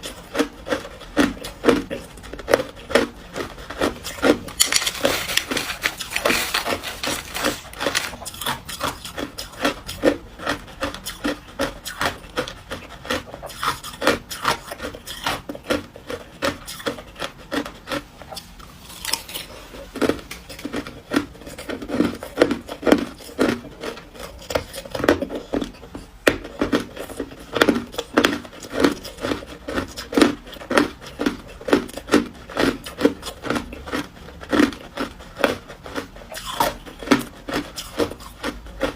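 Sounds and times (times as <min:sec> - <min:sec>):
ice being chewed: 0:00.0 - 0:38.9.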